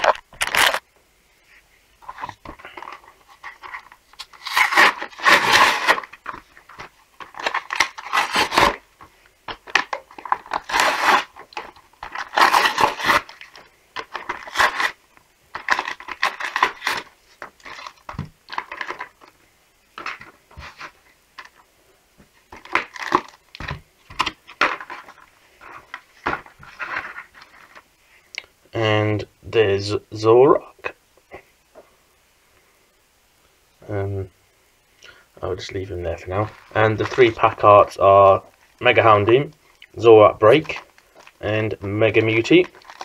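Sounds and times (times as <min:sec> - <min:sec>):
plastic packaging crackling: 0:00.0 - 0:00.8, 0:02.1 - 0:08.8, 0:09.5 - 0:21.6, 0:22.5 - 0:27.8, 0:36.3 - 0:38.0, 0:40.5 - 0:41.4, 0:42.1 - 0:43.0.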